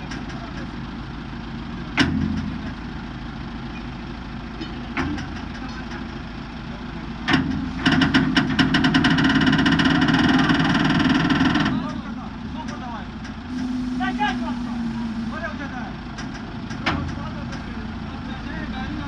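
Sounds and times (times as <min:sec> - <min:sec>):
engine running: 0:13.2 - 0:16.8.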